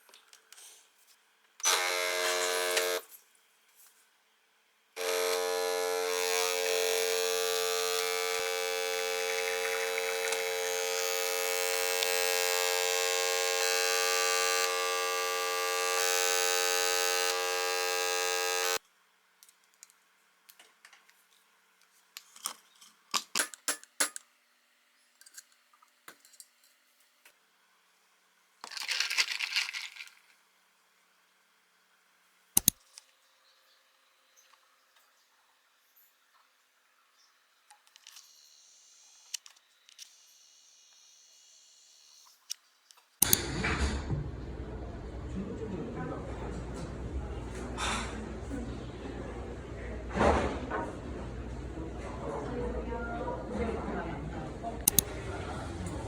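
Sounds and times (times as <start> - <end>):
electric motor whining: 1.6 - 3.0, 5.0 - 18.8
sharp click: 43.2 - 44.0.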